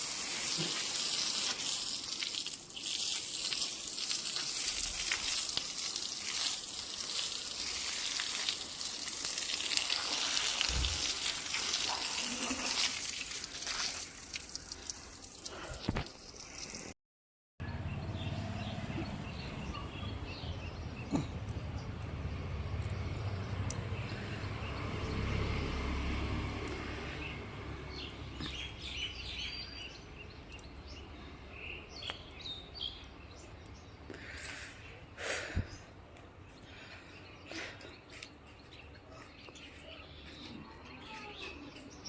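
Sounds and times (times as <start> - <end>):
steady rain with drips: 0.0 - 16.9.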